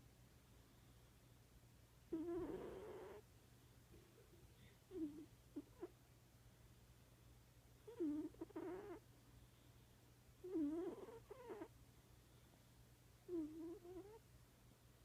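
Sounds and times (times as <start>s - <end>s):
cat snoring: 2.1s - 3.2s, 4.9s - 5.9s, 7.8s - 9.0s, 10.4s - 11.7s, 13.3s - 14.2s.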